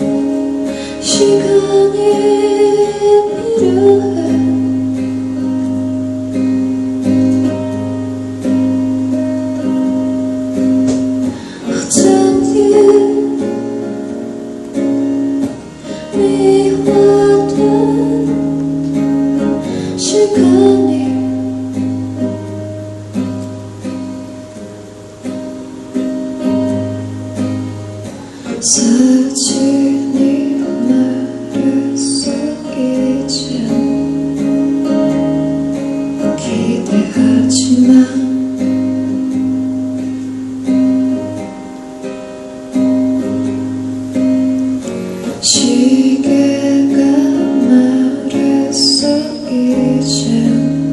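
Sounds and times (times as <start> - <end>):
acoustic guitar strumming chords: 0.0 - 50.9.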